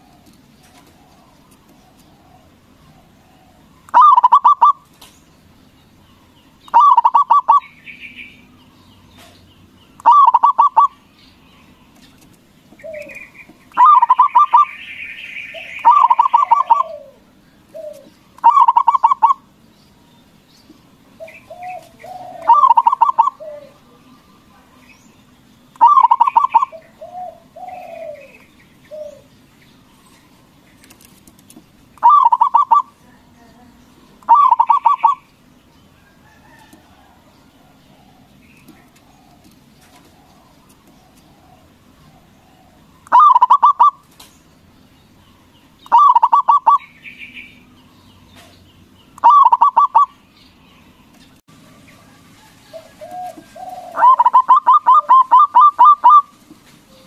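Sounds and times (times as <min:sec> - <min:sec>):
dove bubbling coos: 0:00.0 - 0:04.9, 0:06.7 - 0:07.8, 0:10.0 - 0:11.0, 0:12.7 - 0:19.5, 0:21.2 - 0:24.0, 0:25.7 - 0:29.3, 0:32.0 - 0:33.0, 0:34.2 - 0:35.3, 0:36.1 - 0:44.0, 0:45.8 - 0:47.0, 0:49.2 - 0:50.2, 0:51.9 - 0:57.0
faint bird chirps: 0:20.1 - 0:31.0
low coos: 0:52.0 - 0:56.2.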